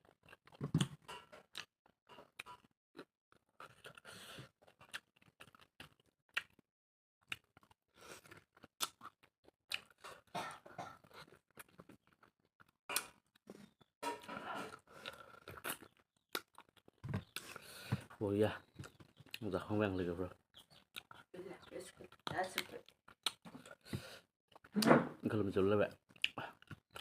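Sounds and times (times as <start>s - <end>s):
chewing meat: 0.0s - 6.6s, 7.2s - 13.8s, 14.6s - 24.8s, 25.9s - 27.0s.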